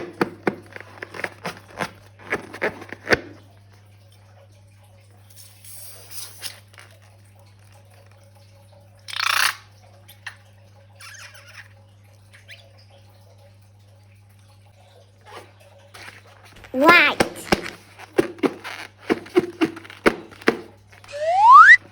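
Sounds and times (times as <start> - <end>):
slime squirt: 16.0 - 21.8.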